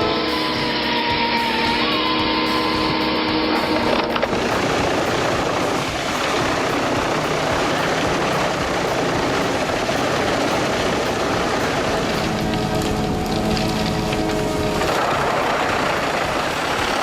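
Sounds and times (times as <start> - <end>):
heavy machinery rushing noise: 0.0 - 17.0
steady engine hum: 0.0 - 17.0.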